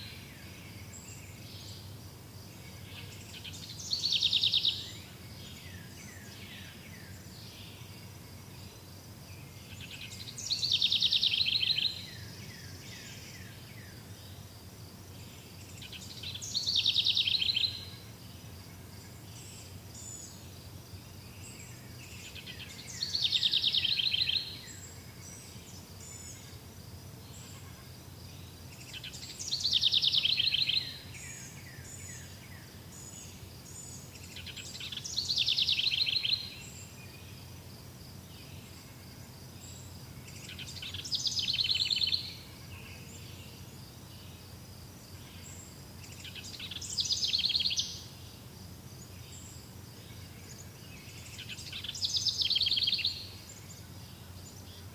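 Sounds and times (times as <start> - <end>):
songbird trilling: 22.2 - 24.8, 28.8 - 31.6, 34.2 - 36.7, 40.4 - 42.4, 46.1 - 48.1, 51.3 - 53.3.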